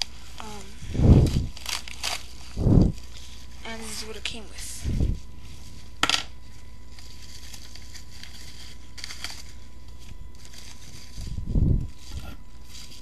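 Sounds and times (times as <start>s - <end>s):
paper or plastic crinkling: 0.0s - 4.5s, 5.2s - 13.0s
steady low hum: 0.0s - 13.0s.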